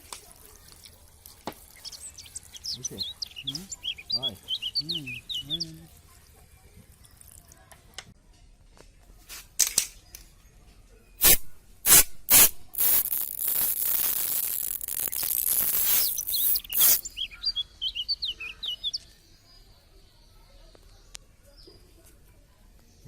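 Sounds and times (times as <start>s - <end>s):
birds chirping: 0.0s - 7.9s, 12.8s - 22.1s
spray pump spraying water: 11.2s - 17.1s.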